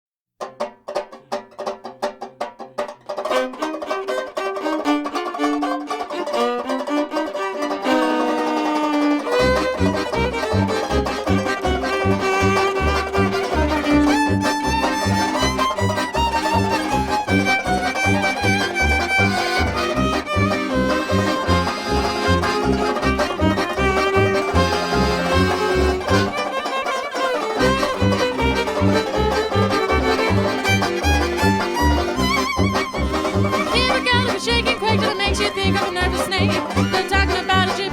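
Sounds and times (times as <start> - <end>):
plucked notes: 0.4 - 37.9
background music melody: 3.0 - 37.9
steady low beat: 9.4 - 26.5, 27.6 - 37.9.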